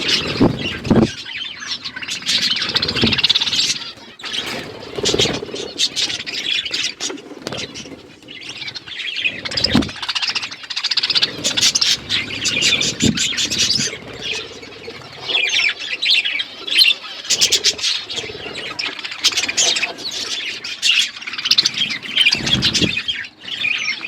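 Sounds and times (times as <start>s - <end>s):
budgerigars chattering and chirping: 0.0s - 24.0s.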